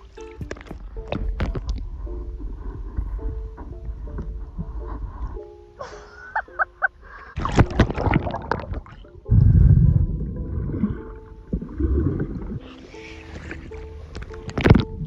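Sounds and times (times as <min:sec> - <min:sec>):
bubbling gurgles: 0:07.4 - 0:15.0
water rushing over microphone: 0:07.4 - 0:15.0
water splashing: 0:07.4 - 0:15.0.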